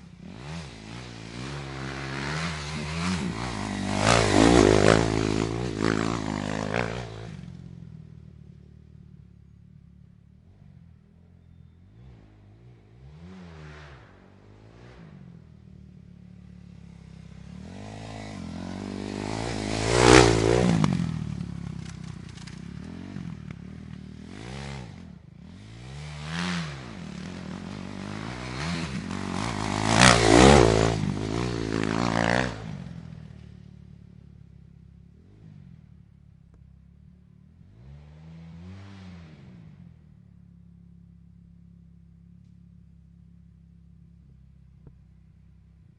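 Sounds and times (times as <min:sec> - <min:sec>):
dirt bike engines revving: 0:00.0 - 0:07.7, 0:10.4 - 0:34.3, 0:37.6 - 0:40.0.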